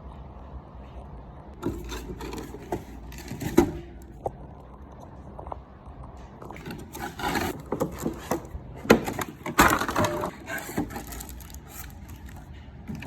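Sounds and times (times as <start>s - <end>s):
packaging rustling: 6.5s - 13.0s.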